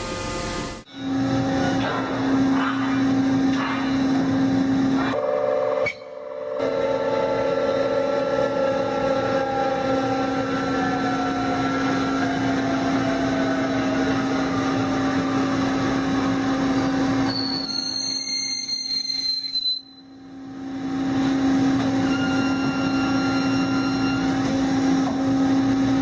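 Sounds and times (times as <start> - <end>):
factory machinery hum: 0.0 - 26.0
whining tones falling in pitch: 5.1 - 20.1.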